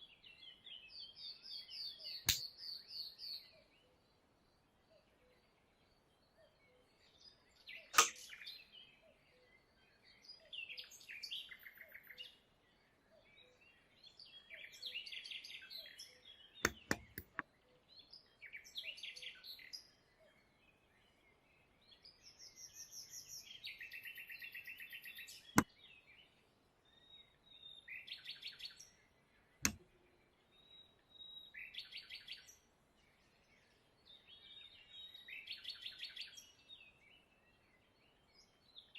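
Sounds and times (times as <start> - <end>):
sharp clicks: 8.0 - 8.2, 16.7 - 17.4
birds chirping: 10.0 - 19.8.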